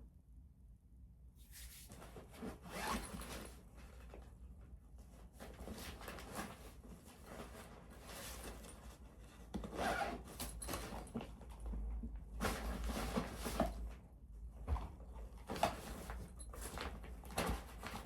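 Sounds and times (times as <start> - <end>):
zipper zipping: 2.6 - 3.2, 9.7 - 10.3.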